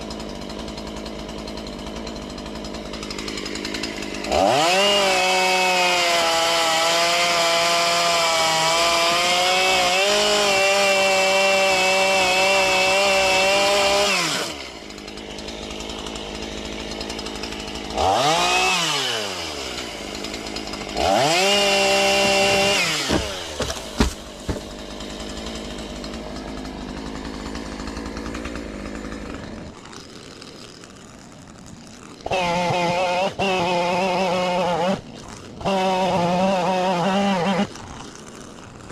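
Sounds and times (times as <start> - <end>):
chainsaw cutting wood: 0.0 - 38.9
sharp knocks: 22.0 - 24.8.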